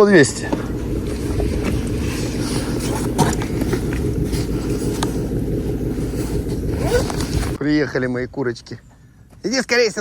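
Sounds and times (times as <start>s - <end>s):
outboard motor running: 0.0s - 7.6s.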